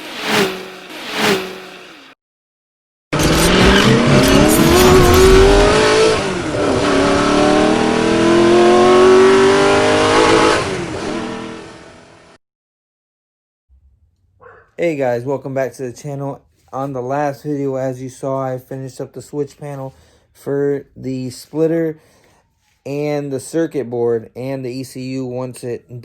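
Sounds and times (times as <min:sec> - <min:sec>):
car engine accelerating: 0:03.2 - 0:12.4.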